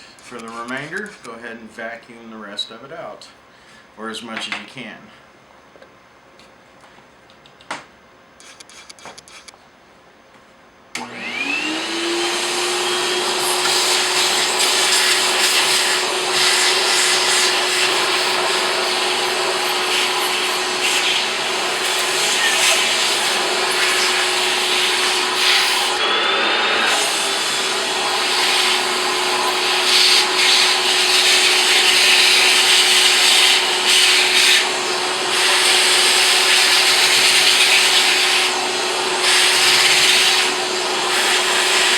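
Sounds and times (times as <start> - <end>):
vacuum cleaner motor whine: 11.0 - 41.9.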